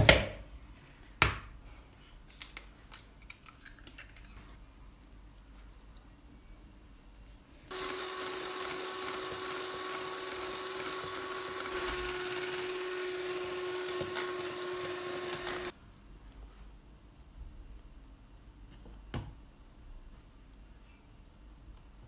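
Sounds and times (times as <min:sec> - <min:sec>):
kitchen appliance motor whining: 0:07.7 - 0:15.7.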